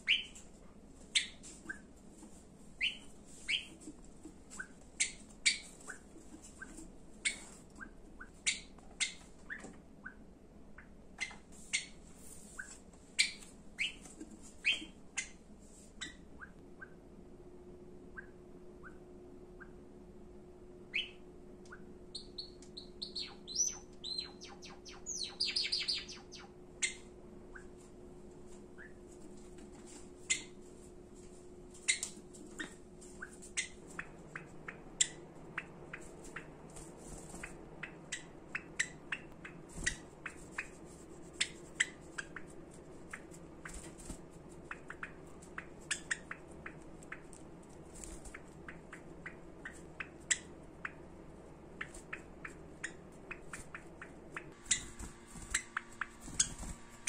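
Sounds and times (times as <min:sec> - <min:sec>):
sparrows chirping: 0:00.0 - 0:00.4, 0:02.8 - 0:03.8, 0:04.6 - 0:10.2, 0:12.6 - 0:15.4, 0:20.9 - 0:27.7, 0:37.3 - 0:47.3, 0:51.7 - 0:57.0.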